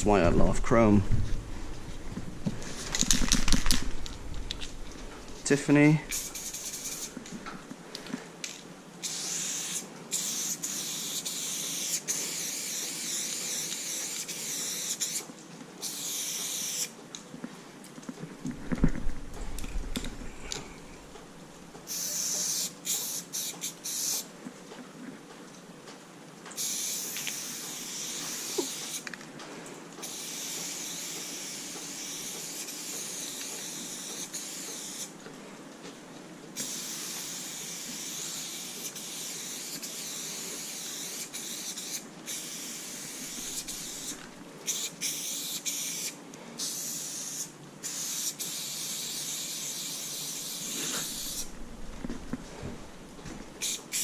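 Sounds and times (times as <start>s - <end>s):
spray paint can hissing: 2.6s - 7.2s, 8.5s - 16.9s, 21.9s - 24.3s, 26.6s - 29.2s, 30.0s - 35.1s, 36.6s - 51.5s, 53.6s - 54.0s.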